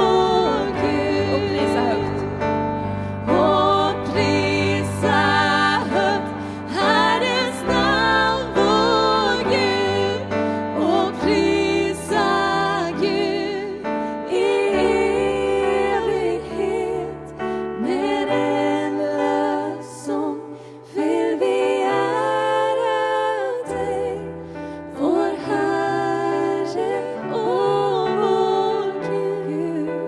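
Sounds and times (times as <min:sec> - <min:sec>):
voices singing worship song: 0:00.0 - 0:30.0.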